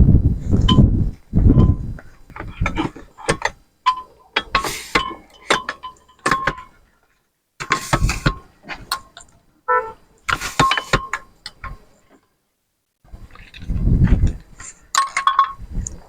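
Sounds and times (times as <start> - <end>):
wind buffeting microphone: 0.0 - 3.2, 13.1 - 14.7, 15.5 - 16.0
metallic clicks and clinks: 2.6 - 6.8.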